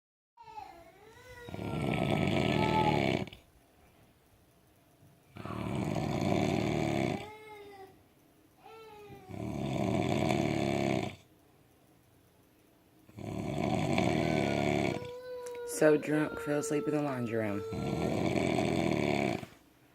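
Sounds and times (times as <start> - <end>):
man snoring loudly: 1.5 - 3.4, 5.4 - 7.4, 9.3 - 11.2, 13.1 - 15.1, 17.5 - 19.6.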